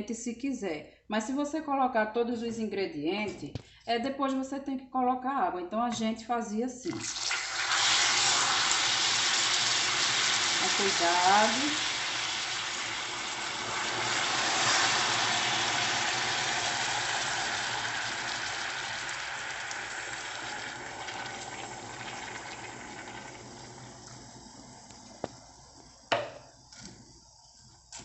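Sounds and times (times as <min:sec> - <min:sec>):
water pouring: 0:07.0 - 0:25.2
caramel sizzling and bubbling in a pan: 0:07.0 - 0:28.0.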